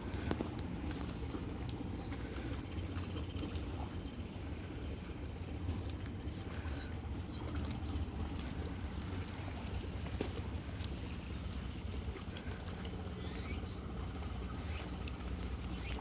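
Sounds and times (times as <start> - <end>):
low rumble of wind or surf: 0.0 - 16.0
small birds chirping: 6.5 - 8.9, 12.5 - 16.0.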